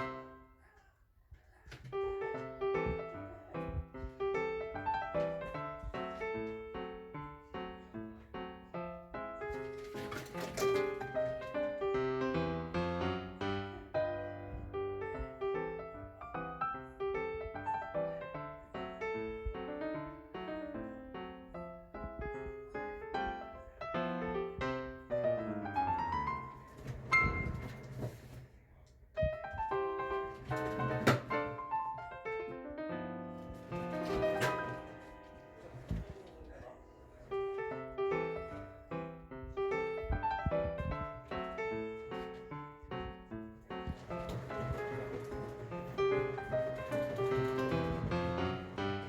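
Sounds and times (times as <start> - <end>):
piano melody: 0.0 - 0.6, 1.9 - 28.2, 29.2 - 49.0.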